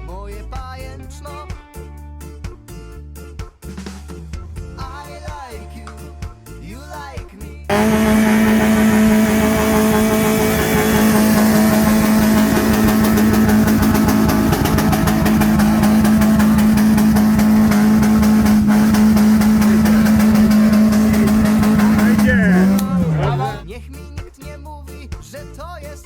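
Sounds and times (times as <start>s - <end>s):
engine at high revs: 7.7s - 23.6s.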